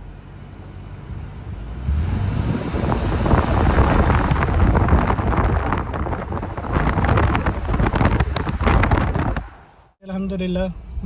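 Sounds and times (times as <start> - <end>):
vehicle engine and road rumble: 0.0 - 11.0
wind buffeting microphone: 1.7 - 9.8.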